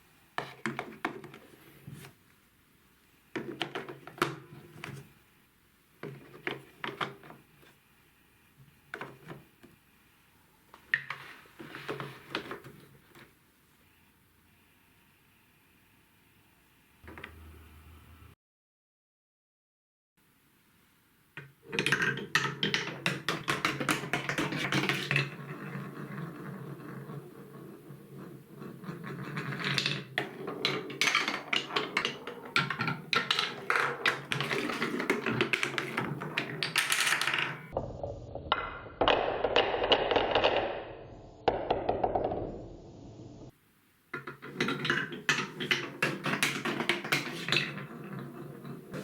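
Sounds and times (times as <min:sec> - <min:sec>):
marbles rolling and clattering: 0:21.7 - 0:43.2, 0:44.2 - 0:49.0.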